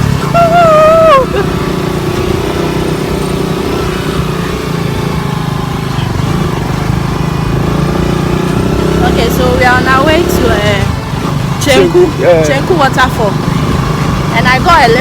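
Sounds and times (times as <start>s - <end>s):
motorcycle engine running: 0.0s - 15.0s
person calling out: 0.2s - 1.5s.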